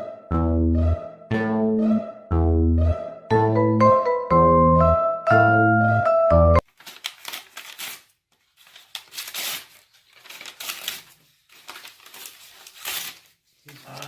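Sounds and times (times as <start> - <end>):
dry rustling and crackling: 8.6 - 14.0.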